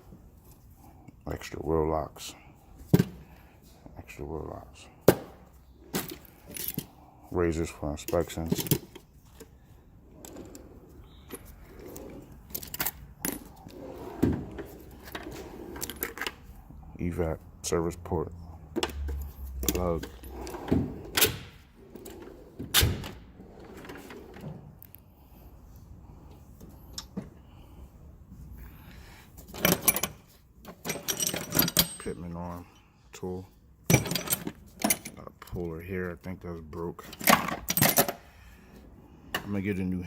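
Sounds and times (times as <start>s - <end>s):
metal tools clinking: 5.9s - 7.0s, 10.2s - 14.1s, 29.5s - 32.4s, 33.9s - 35.6s
metal tools clanking: 29.5s - 32.4s, 33.9s - 35.6s.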